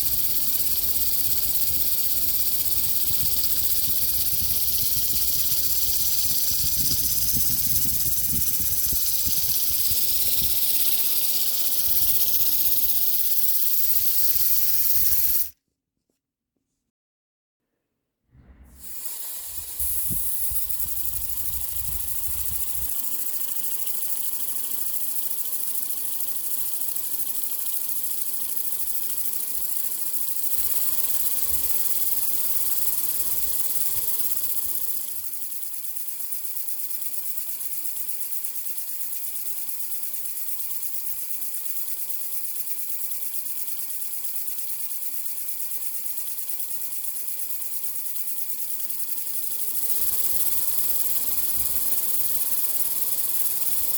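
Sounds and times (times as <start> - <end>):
air engine exhaust hiss: 0.0 - 15.5, 18.4 - 25.2, 30.5 - 35.1, 49.8 - 53.9.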